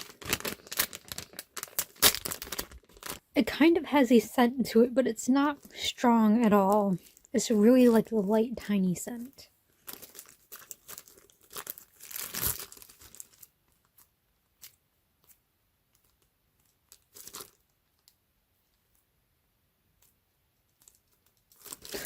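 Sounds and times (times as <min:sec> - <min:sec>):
plastic packaging crinkling: 0:00.0 - 0:03.3, 0:09.8 - 0:18.2, 0:20.7 - 0:22.0.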